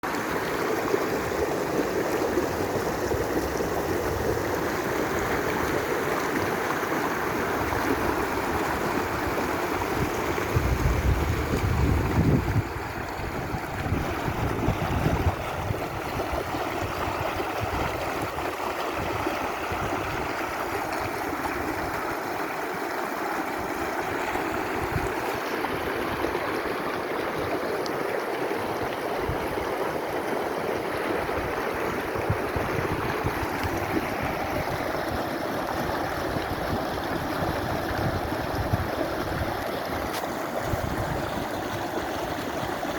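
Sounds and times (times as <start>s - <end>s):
stream water rushing: 0.0s - 42.9s
wind buffeting microphone: 7.4s - 22.0s, 23.9s - 27.6s, 30.8s - 42.9s.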